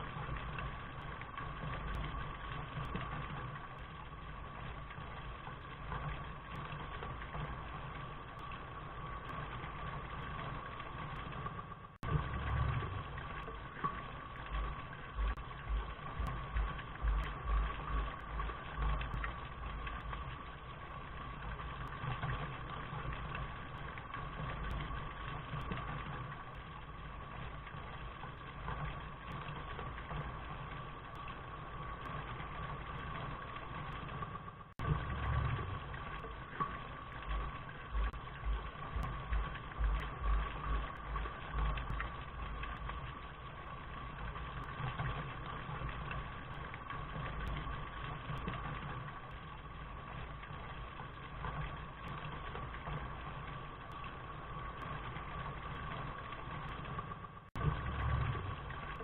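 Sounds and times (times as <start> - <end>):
steady rain: 0.0 - 59.0
low rumble: 12.0 - 32.8, 34.8 - 53.3, 57.6 - 59.0
irregular low thumps: 14.5 - 19.4, 37.3 - 42.9.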